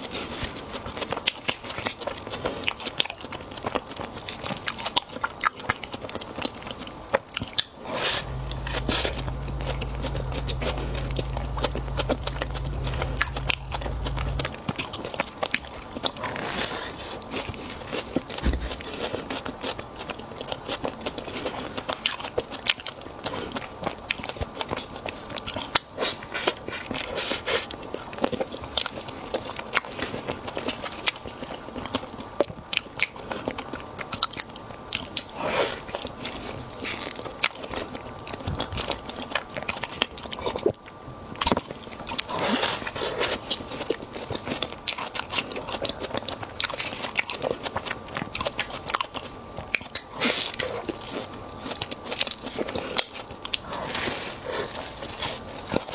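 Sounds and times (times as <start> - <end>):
biting and chewing: 41.4 - 55.9.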